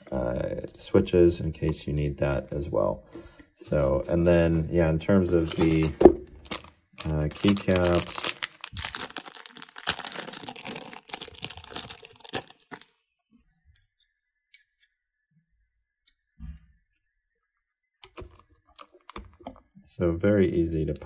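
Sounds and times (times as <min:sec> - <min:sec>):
crinkling and clicking: 0:05.4 - 0:13.0, 0:18.0 - 0:19.8.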